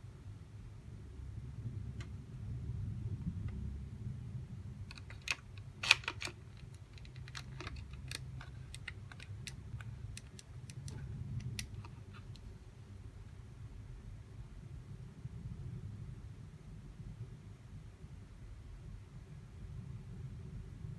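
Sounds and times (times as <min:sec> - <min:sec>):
low background hum: 0:00.0 - 0:20.9
clicks of plastic parts handled: 0:04.9 - 0:12.5.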